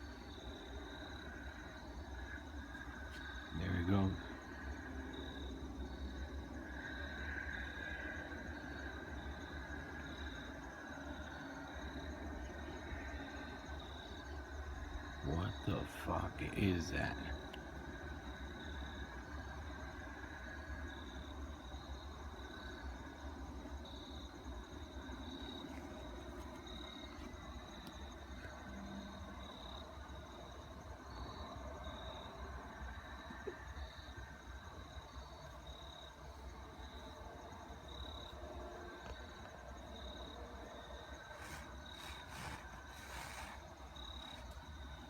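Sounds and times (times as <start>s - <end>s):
crickets chirping: 0.0s - 45.0s.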